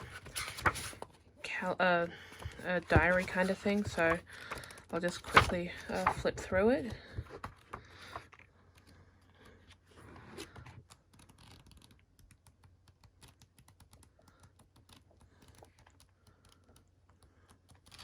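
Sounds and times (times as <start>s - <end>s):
paper pages flipping: 0.0s - 1.2s, 2.2s - 14.1s.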